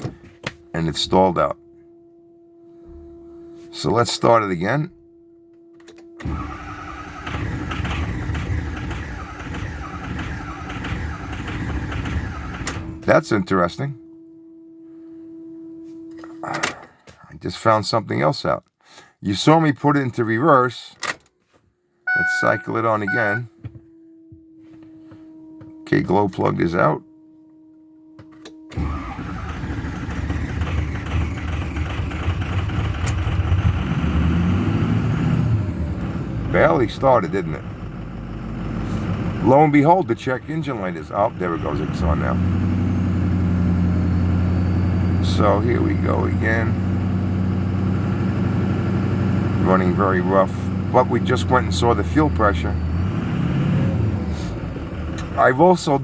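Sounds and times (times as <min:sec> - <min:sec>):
diesel engine starter cranking: 0:05.8 - 0:13.0, 0:28.4 - 0:34.6
diesel engine running unevenly: 0:06.2 - 0:13.0, 0:28.7 - 0:55.8.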